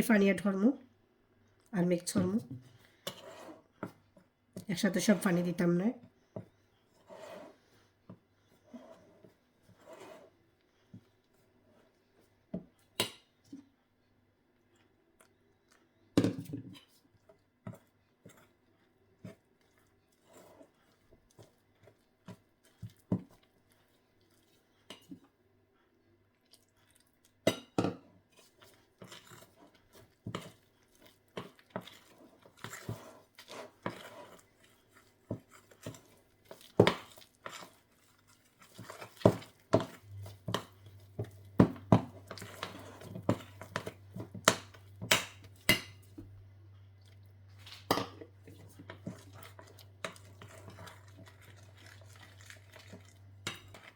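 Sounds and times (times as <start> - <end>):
utensil scraping a bowl: 2.9 - 4.0, 6.9 - 7.8, 8.5 - 10.4, 19.2 - 21.5, 28.4 - 45.1, 48.4 - 53.9.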